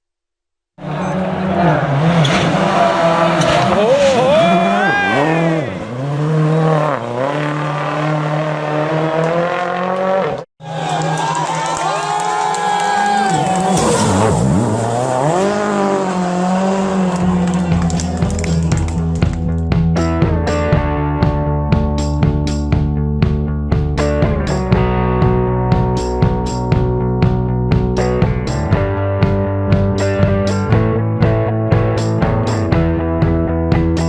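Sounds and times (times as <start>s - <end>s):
rally car engine at high revs: 0.8s - 10.4s, 13.4s - 18.3s
second rally car engine rising: 13.3s - 18.3s.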